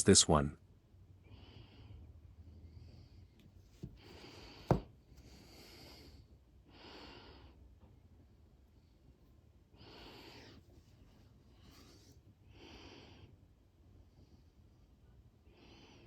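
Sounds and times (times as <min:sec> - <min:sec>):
sharp tap: 0:04.7 - 0:04.9.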